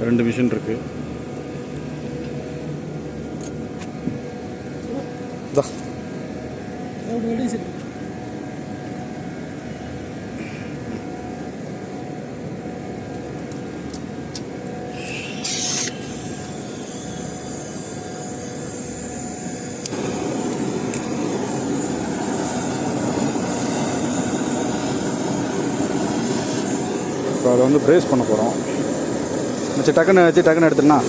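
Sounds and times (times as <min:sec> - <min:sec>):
steady mechanical hum: 0:00.0 - 0:31.0
hiss with falling squeal: 0:14.9 - 0:31.0.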